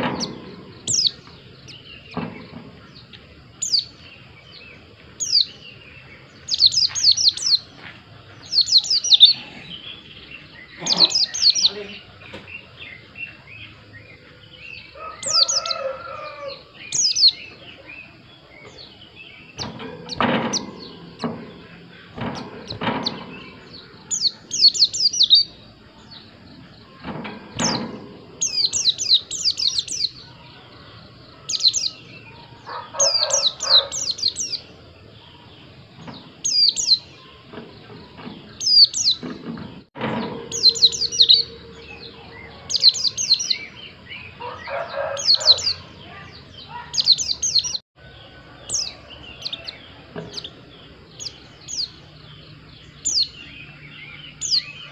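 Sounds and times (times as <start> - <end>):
sharp knocks: 0.0 - 1.4, 19.6 - 24.2, 27.0 - 30.0
bird singing high chirps: 0.0 - 39.3, 40.1 - 54.9
lower bird calls: 0.0 - 54.9.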